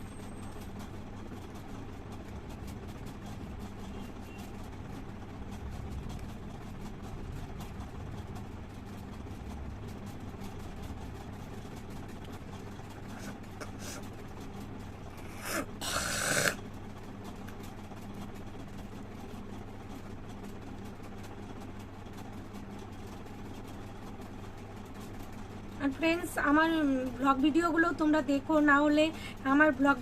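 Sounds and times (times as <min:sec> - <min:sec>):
low mechanical hum: 0:00.0 - 0:30.0
person spitting: 0:13.0 - 0:14.1, 0:15.2 - 0:16.6.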